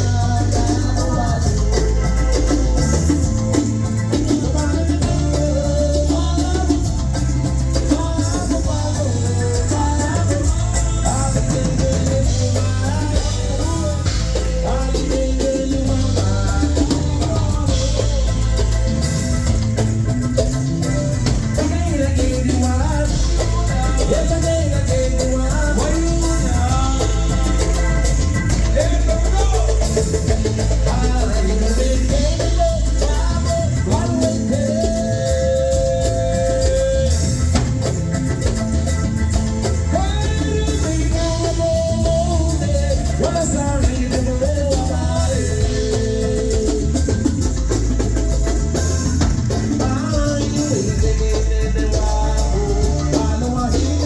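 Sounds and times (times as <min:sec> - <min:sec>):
bass: 0:00.0 - 0:54.0
drum kit: 0:00.0 - 0:54.0
guitar: 0:00.0 - 0:54.0
rock band playing: 0:00.0 - 0:54.0.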